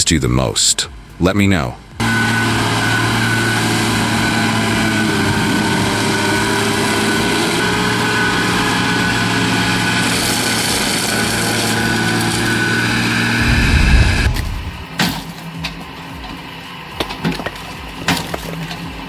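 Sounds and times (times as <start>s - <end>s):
engine running steadily: 0.9s - 16.4s
high thin whine: 1.8s - 15.0s.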